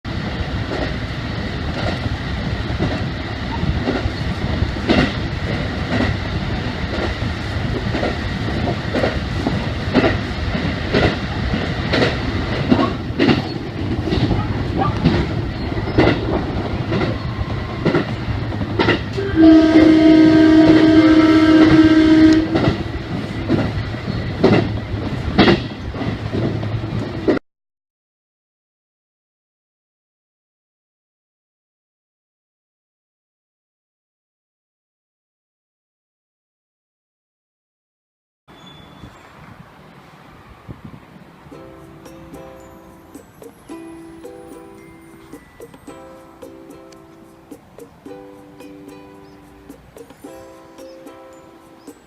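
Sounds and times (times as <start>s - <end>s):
train rumble: 0.1s - 27.4s, 38.5s - 52.0s
wheels clickety-clack over rail joints: 0.1s - 27.4s, 38.5s - 52.0s
train horn: 17.0s - 23.2s.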